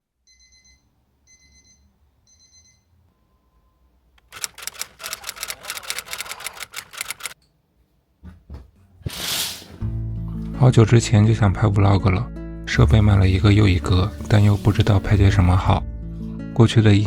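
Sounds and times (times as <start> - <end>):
electronic alarm beeps: 0.3 - 3.8
alarm clock clattering rattle: 4.2 - 7.4.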